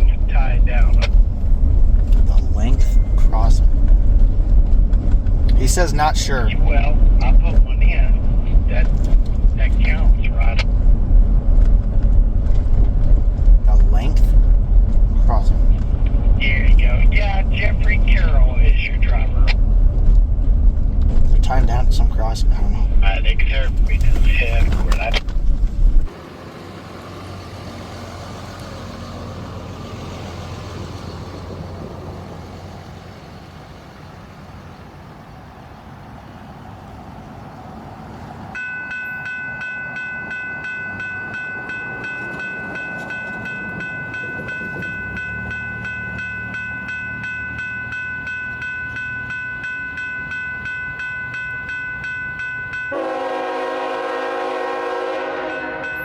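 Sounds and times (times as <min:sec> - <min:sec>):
crossing warning bell ringing: 0:00.0 - 0:04.2, 0:38.5 - 0:56.0
locomotive diesel engine rumble: 0:00.0 - 0:56.0
low vehicle rumble: 0:00.0 - 0:56.0
locomotive air horn blast: 0:52.9 - 0:56.0.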